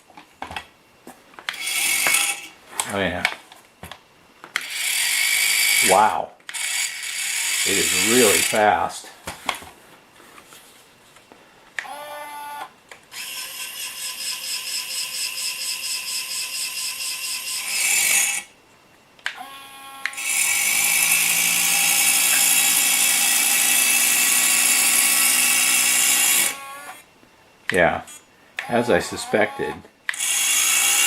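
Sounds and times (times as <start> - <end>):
small electric motor whine: 1.5 - 2.6, 4.6 - 8.8, 11.8 - 18.5, 19.3 - 27.1, 28.1 - 31.0.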